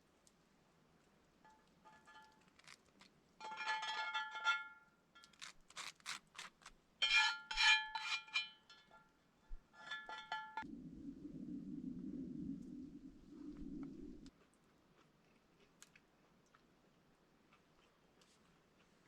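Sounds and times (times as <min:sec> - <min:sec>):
metal items clinking and scraping: 0:01.8 - 0:09.0, 0:09.7 - 0:10.6
steady low hum: 0:10.6 - 0:14.3.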